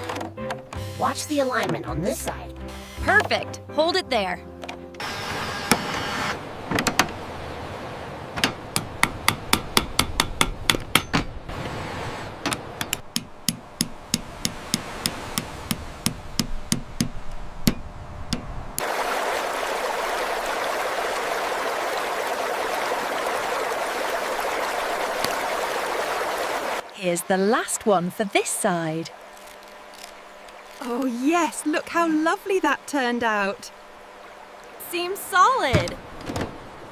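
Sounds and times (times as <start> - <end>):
hammer tapping on wood: 8.4 - 11.2, 12.5 - 18.5
running water: 18.8 - 36.9.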